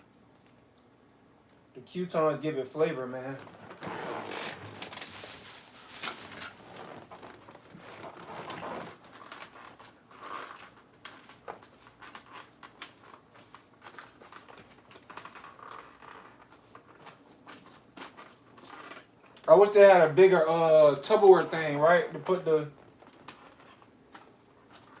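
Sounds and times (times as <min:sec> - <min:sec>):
salad rustling and crinkling: 0:03.4 - 0:19.4, 0:22.8 - 0:25.0.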